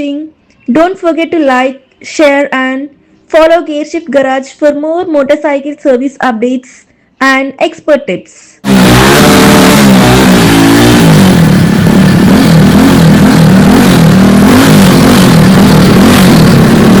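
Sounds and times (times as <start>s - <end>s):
motorcycle engine revving: 8.6s - 17.0s.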